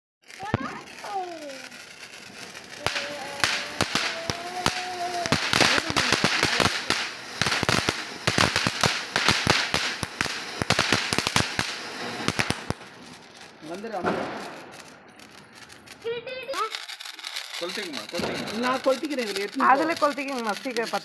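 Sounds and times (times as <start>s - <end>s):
firecrackers popping: 0.2s - 21.0s.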